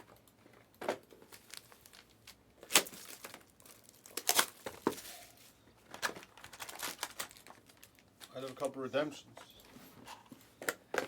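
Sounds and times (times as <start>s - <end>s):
plastic wrapper crinkling and tearing: 1.2s - 8.9s.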